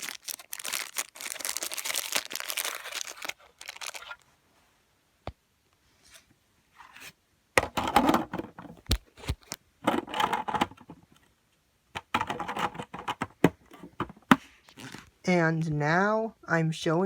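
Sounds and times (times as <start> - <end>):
wrapper rustling: 0.0 - 4.3.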